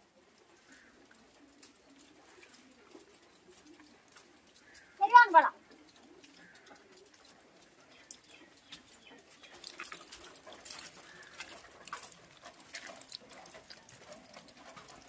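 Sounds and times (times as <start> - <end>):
herb sprigs snapping and rustling: 7.9 - 15.0.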